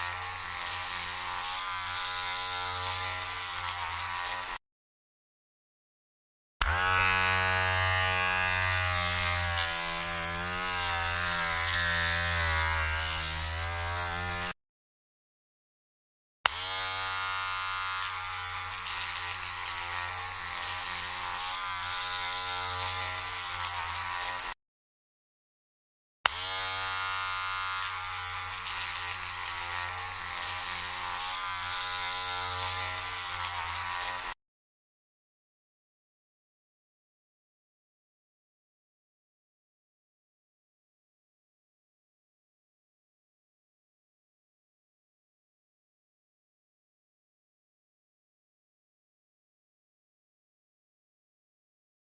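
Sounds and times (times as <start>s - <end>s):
electric hair trimmer buzzing: 0.0s - 4.6s, 6.6s - 14.6s, 16.5s - 24.6s, 26.3s - 34.4s.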